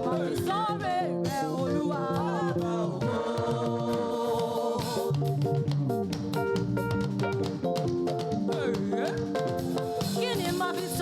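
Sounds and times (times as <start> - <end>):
drum kit steady beat: 0.0 - 11.0
guitar: 0.0 - 11.0
bass guitar: 4.8 - 10.6.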